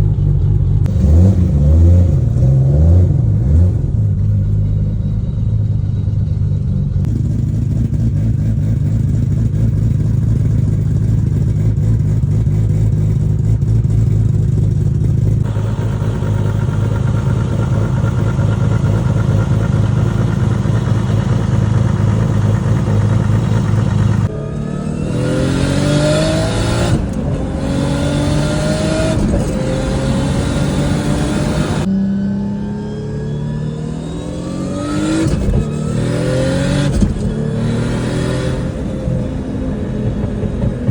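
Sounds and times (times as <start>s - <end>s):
car engine idling and revving: 0.0s - 40.9s
gear upshifts: 11.3s - 40.9s.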